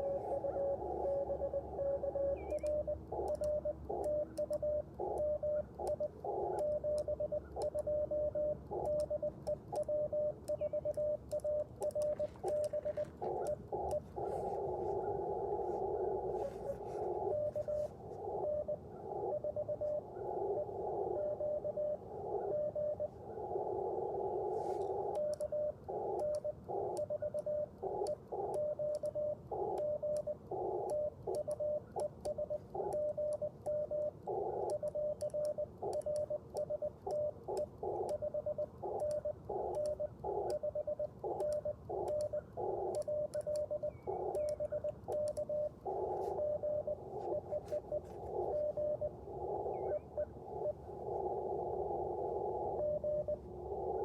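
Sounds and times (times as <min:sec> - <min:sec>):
morse code signal: 0:00.0 - 0:54.0
radio receiver hiss: 0:12.0 - 0:21.4, 0:41.2 - 0:54.0.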